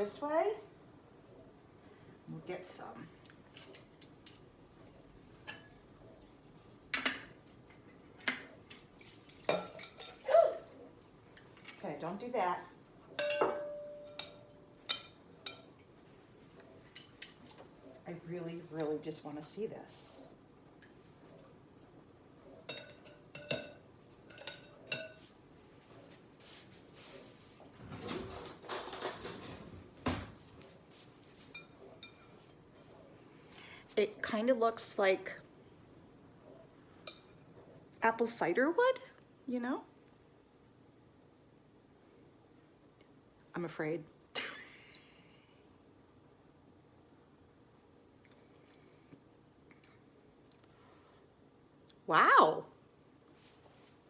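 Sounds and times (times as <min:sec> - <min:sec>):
kitchen bowls and utensils clinking: 0:03.2 - 0:04.5, 0:05.4 - 0:10.3, 0:13.2 - 0:15.9, 0:16.9 - 0:17.6, 0:22.6 - 0:25.3, 0:28.2 - 0:29.6, 0:31.4 - 0:32.6
dishware knock: 0:13.2 - 0:14.4.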